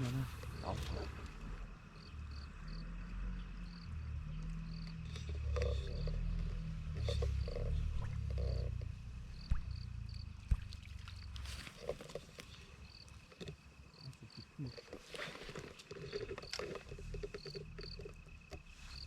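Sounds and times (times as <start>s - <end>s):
insects chirping: 0.0s - 19.0s
steady low rumble: 5.8s - 11.7s.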